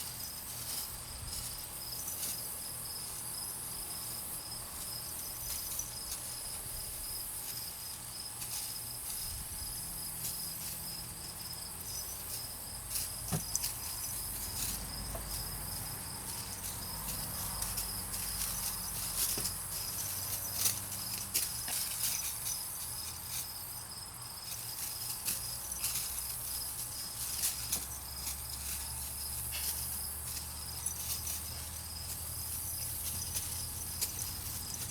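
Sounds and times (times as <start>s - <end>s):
insects chirping: 0.0s - 34.9s
light clicks and rustles: 11.8s - 23.6s, 24.5s - 34.9s.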